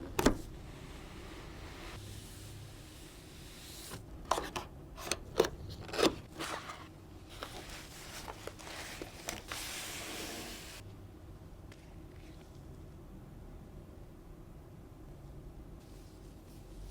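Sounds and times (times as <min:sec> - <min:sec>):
cardboard and plastic scraping: 0:05.4 - 0:10.8.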